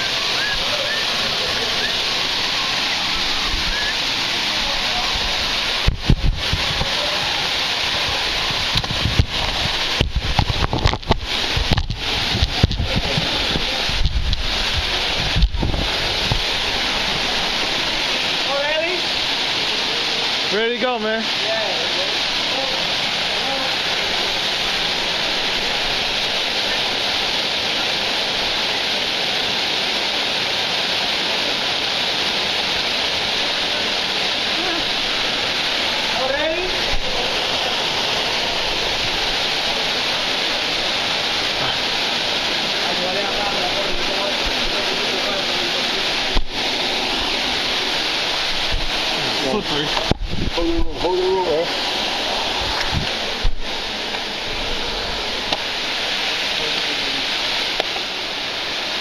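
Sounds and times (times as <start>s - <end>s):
waterfall pouring: 0.0s - 59.0s
low thumps on microphone: 5.8s - 6.9s.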